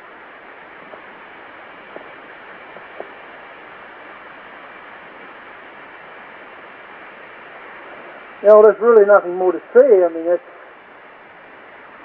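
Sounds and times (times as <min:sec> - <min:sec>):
recording hiss: 0:00.0 - 0:12.0.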